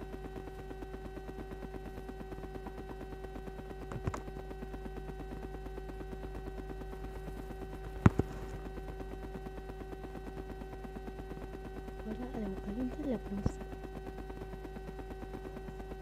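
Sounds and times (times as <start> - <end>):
steady pulsing hum: 0.0 - 16.0.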